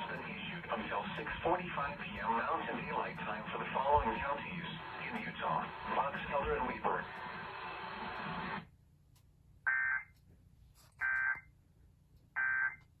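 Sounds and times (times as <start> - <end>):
broadcast hiss: 0.0 - 8.7.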